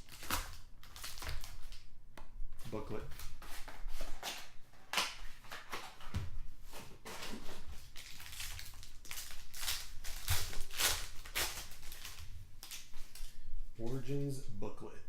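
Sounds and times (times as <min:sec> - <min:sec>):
card wrapper crinkling and rustling: 0:00.0 - 0:01.9, 0:02.7 - 0:06.1, 0:07.0 - 0:13.4.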